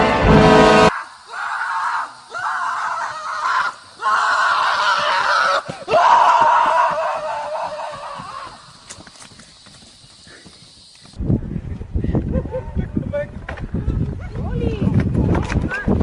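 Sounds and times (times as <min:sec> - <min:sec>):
music: 0:00.0 - 0:00.9
harsh screams: 0:00.0 - 0:08.8.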